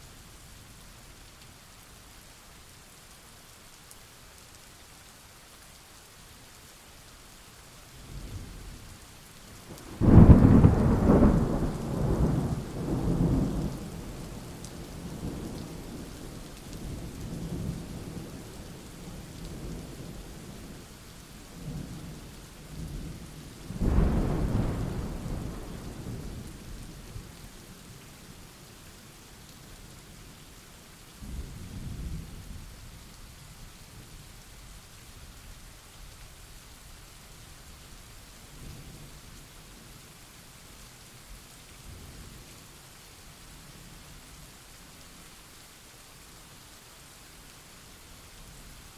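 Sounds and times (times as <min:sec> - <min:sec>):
steady rain: 0:00.0 - 0:48.9
thunder: 0:09.8 - 0:13.9, 0:23.7 - 0:26.7.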